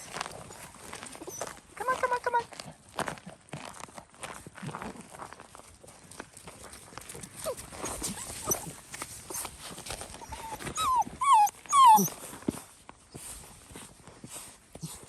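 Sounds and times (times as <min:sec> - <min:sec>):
puppy high whines: 0:07.4 - 0:09.5, 0:10.2 - 0:12.3
puppies whimpering: 0:07.4 - 0:12.3.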